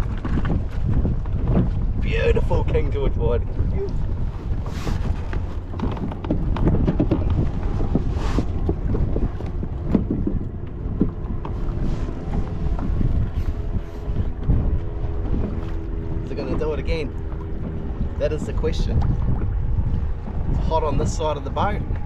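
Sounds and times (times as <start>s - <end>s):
wind buffeting microphone: 0.0s - 22.0s
knocks and clicks on kayak: 5.0s - 15.9s.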